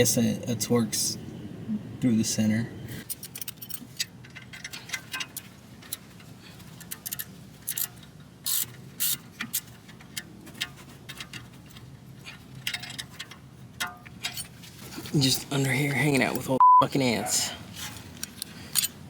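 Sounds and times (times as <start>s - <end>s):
tools being handled: 3.0s - 15.0s, 17.8s - 19.0s
ratchet clicking: 6.8s - 9.7s.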